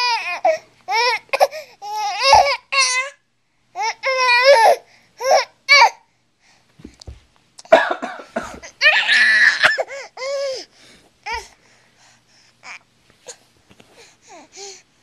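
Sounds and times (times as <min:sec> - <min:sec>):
baby coughing: 0:01.3 - 0:01.6, 0:07.6 - 0:08.8, 0:09.4 - 0:10.1
baby squealing and laughing: 0:08.8 - 0:10.0.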